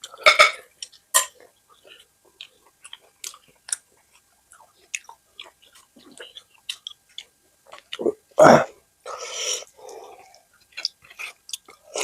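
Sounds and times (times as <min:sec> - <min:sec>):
chewing and wet mouth smacks: 0:01.7 - 0:08.0, 0:10.6 - 0:12.0.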